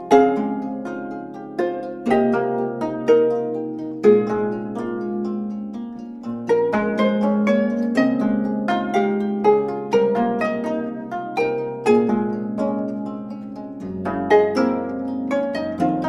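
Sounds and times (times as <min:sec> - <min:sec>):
plucked zithers playing: 0:00.0 - 0:16.0.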